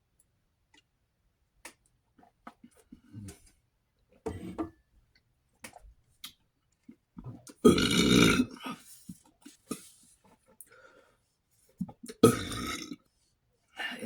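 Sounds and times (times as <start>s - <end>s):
man burping: 7.7s - 8.8s, 12.2s - 13.0s.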